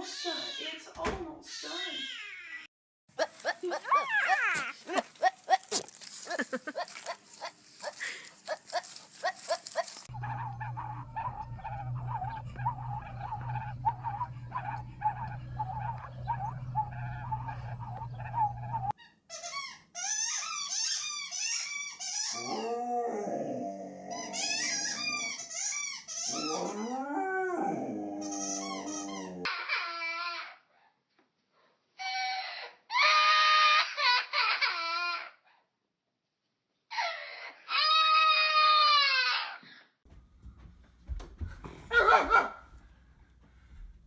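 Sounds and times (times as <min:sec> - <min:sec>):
dog whining and howling: 0:10.0 - 0:19.0, 0:22.2 - 0:30.5
low hum: 0:10.1 - 0:18.9.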